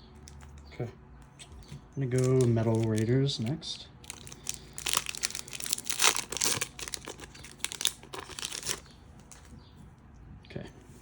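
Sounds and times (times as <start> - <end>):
foil wrapper crinkling: 2.1 - 3.1, 4.0 - 9.5
foil wrapper tearing: 2.2 - 3.1, 4.0 - 9.5.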